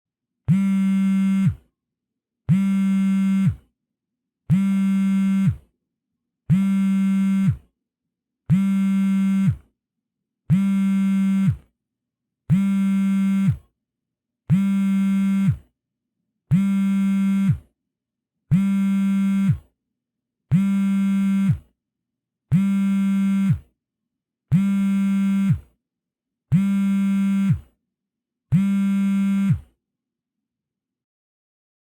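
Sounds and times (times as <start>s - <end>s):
smartphone vibrating: 0.5s - 1.6s, 2.5s - 3.6s, 4.5s - 5.6s, 6.5s - 7.7s, 8.5s - 9.7s, 10.5s - 11.7s, 12.5s - 13.7s, 14.5s - 15.7s, 16.5s - 17.7s, 18.5s - 19.7s, 20.5s - 21.7s, 22.5s - 23.7s, 24.5s - 25.7s, 26.5s - 27.8s, 28.5s - 29.7s.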